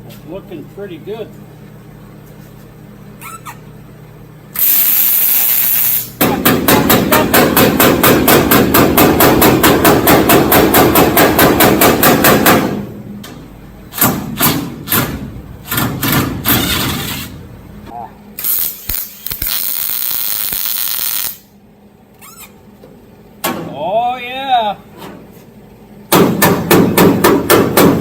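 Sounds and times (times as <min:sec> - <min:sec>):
hammer strikes on sheet metal: 0:06.2 - 0:12.9, 0:14.0 - 0:16.6, 0:26.1 - 0:28.0.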